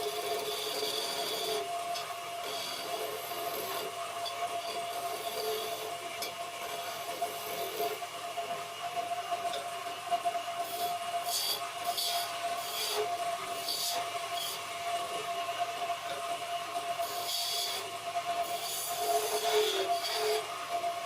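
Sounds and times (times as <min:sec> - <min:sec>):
turning tool scraping wood: 0:00.0 - 0:08.0, 0:10.6 - 0:15.2, 0:17.0 - 0:20.6
wood lathe humming: 0:00.0 - 0:21.0.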